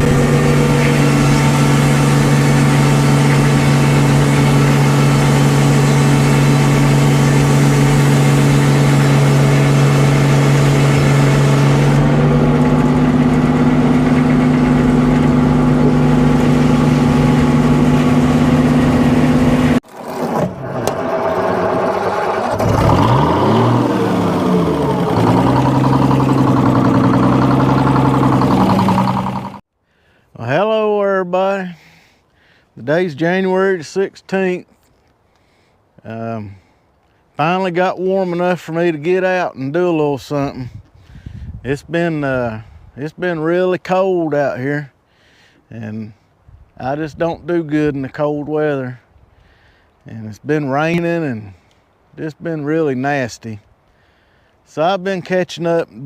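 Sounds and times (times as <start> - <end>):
engine revving up and down: 0.0 - 19.8, 20.4 - 29.6
engine running steadily: 0.0 - 19.8, 20.5 - 29.6.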